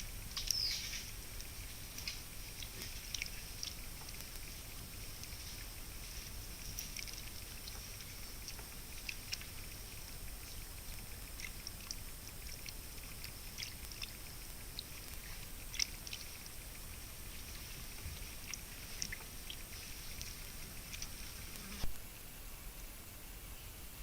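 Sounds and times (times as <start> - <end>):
microphone hiss: 0.0 - 24.0
high bird chips: 0.3 - 1.2.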